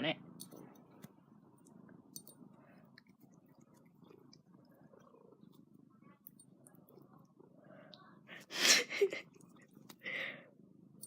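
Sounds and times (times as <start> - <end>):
cat purring: 0.9 - 8.4.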